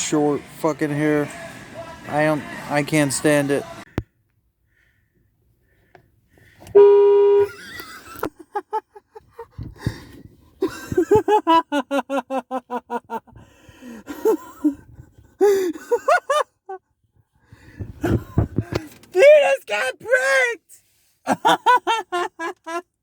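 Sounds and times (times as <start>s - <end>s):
car horn blast: 6.7s - 7.5s
man laughing hard: 7.4s - 9.6s, 10.6s - 13.4s, 14.0s - 16.8s, 21.3s - 23.0s.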